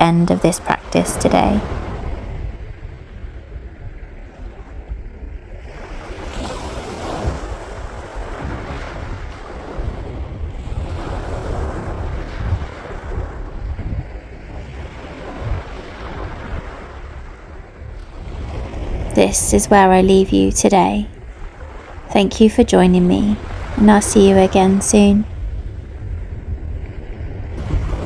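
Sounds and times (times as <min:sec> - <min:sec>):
sea waves on sandy beach: 0:00.2 - 0:19.0, 0:26.6 - 0:28.0
wind rumbling on microphone: 0:01.6 - 0:19.1, 0:25.3 - 0:28.0.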